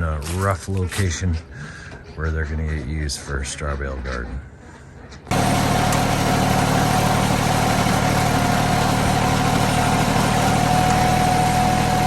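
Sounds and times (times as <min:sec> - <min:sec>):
tractor engine running: 0:05.3 - 0:12.0.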